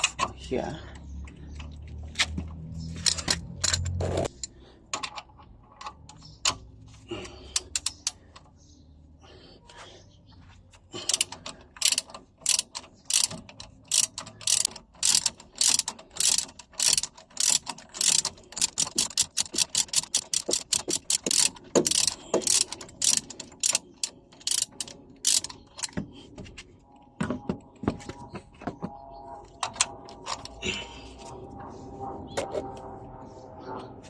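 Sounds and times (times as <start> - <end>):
ratchet wrench clicking: 3.0 - 5.1, 7.5 - 8.2, 11.0 - 26.0.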